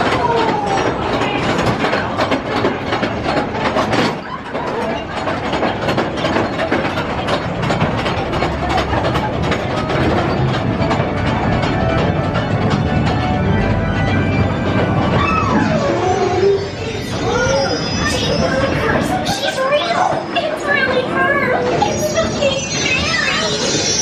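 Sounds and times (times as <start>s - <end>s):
mechanical rattling and clicking: 0.0s - 15.2s.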